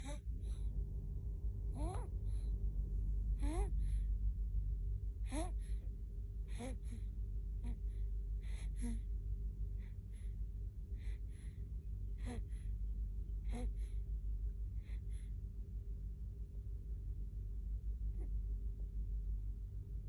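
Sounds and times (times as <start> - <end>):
steady low hum: 0.0 - 20.0
baby snoring: 1.8 - 2.1, 3.4 - 3.9, 5.3 - 5.7, 8.6 - 9.1.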